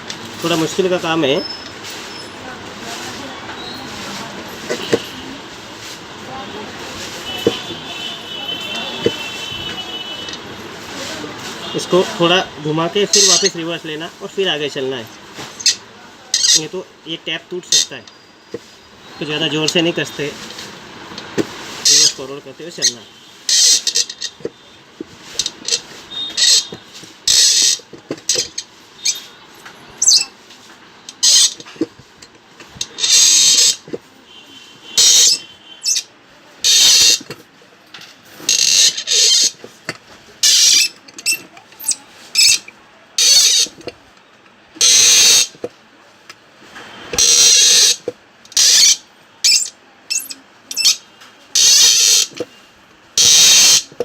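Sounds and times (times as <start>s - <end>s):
thread tap squeaking on metal: 15.6s - 16.7s, 25.4s - 29.3s, 30.0s - 30.3s, 31.1s - 31.8s, 32.8s - 34.0s, 35.0s - 37.4s, 38.5s - 39.6s, 40.4s - 44.0s, 47.2s - 51.0s, 51.6s - 52.5s, 53.2s - 54.0s.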